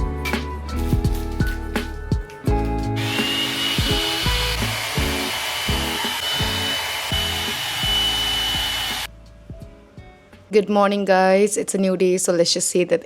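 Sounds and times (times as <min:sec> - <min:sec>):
background music with beat: 0:00.0 - 0:06.6, 0:07.2 - 0:10.5
hair dryer running: 0:03.0 - 0:09.1.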